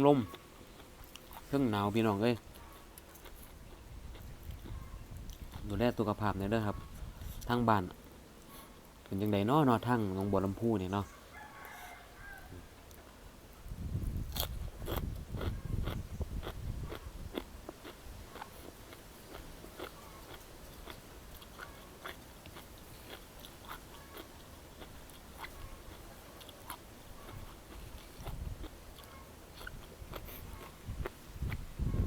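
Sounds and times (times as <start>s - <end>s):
person chewing and crunching food: 0.1s - 6.2s, 14.0s - 32.0s.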